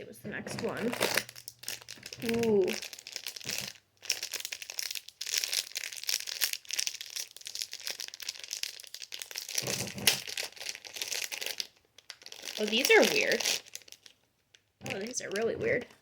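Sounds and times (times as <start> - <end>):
plastic packaging crinkling: 0.3 - 16.0.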